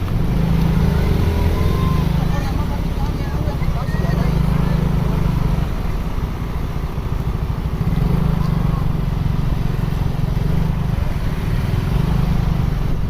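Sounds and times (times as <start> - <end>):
bus diesel engine running: 0.0 - 13.0.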